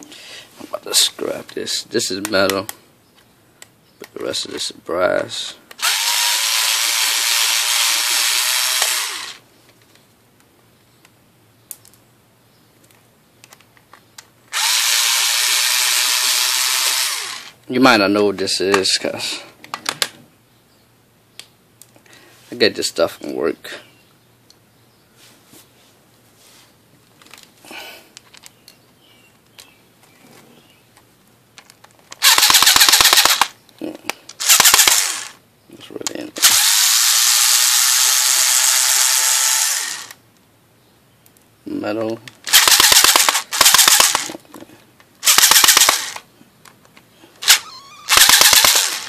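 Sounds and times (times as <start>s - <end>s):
cordless power driver rattling: 5.8s - 9.4s, 14.5s - 17.5s, 32.1s - 33.5s, 34.4s - 35.4s, 36.4s - 40.2s, 42.5s - 44.4s, 45.2s - 46.2s, 47.4s - 49.0s.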